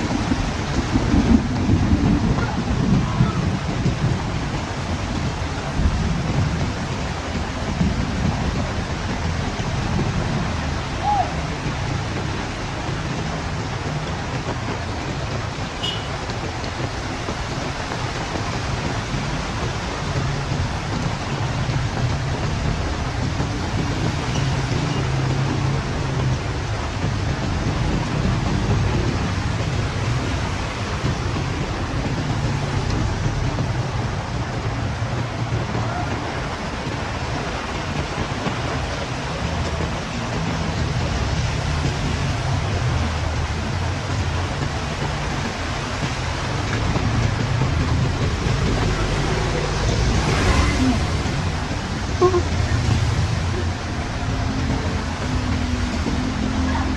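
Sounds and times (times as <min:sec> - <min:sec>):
heavy rain and wind: 0:00.0 - 0:56.9
low rumble: 0:25.4 - 0:56.9.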